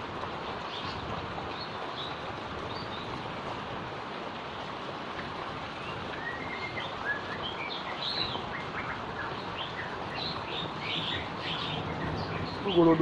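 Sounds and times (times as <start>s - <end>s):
steady rain falling: 0.0s - 13.0s
birds chirping: 5.8s - 13.0s.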